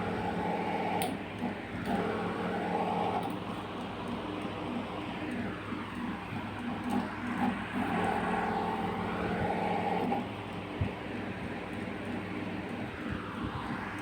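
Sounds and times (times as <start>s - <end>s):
ceiling fan motor hum: 0.0s - 14.0s.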